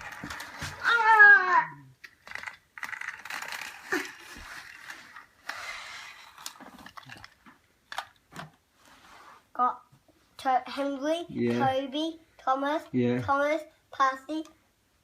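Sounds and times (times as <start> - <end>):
toy trains clicking and rattling: 0.0 - 0.8, 2.0 - 8.1
child exclaiming: 0.8 - 1.9.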